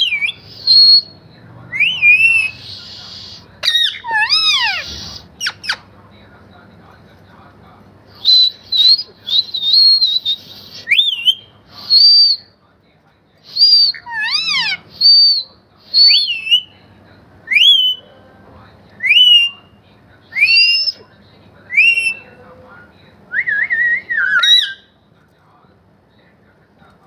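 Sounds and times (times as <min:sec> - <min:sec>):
parrot whistling: 0:00.0 - 0:05.8, 0:08.2 - 0:12.5, 0:13.5 - 0:16.7, 0:17.5 - 0:18.1, 0:19.0 - 0:19.7, 0:20.3 - 0:21.0, 0:21.7 - 0:22.4, 0:23.3 - 0:25.0.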